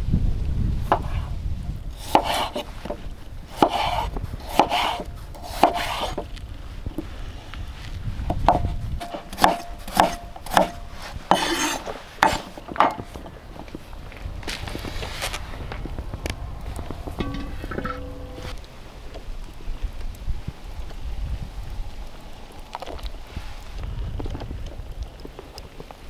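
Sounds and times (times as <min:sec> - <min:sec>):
wind on microphone: 0:00.0 - 0:25.8
knife chopping on wooden board: 0:00.8 - 0:01.3, 0:02.0 - 0:06.3, 0:08.3 - 0:13.3.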